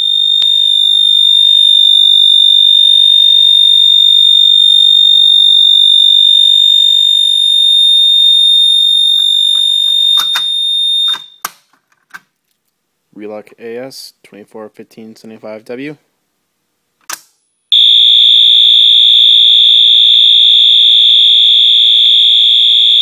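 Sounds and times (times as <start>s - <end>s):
fire alarm horn tone: 0.0s - 11.4s, 17.7s - 23.0s.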